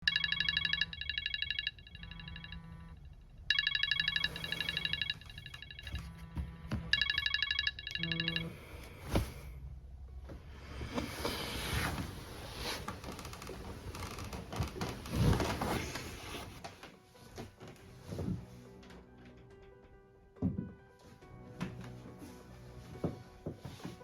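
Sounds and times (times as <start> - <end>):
phone ringtone trilling: 0.0 - 6.2, 6.9 - 8.7.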